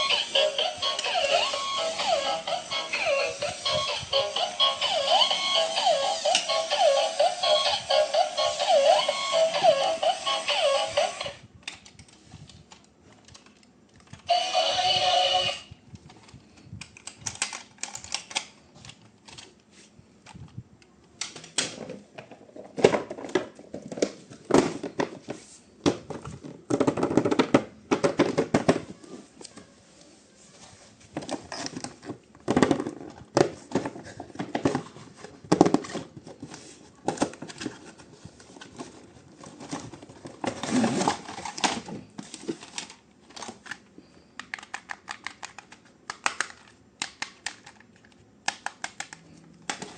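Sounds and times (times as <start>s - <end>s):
plastic toy parts clicking and rustling: 0.0s - 14.6s, 15.9s - 19.6s, 31.2s - 49.9s.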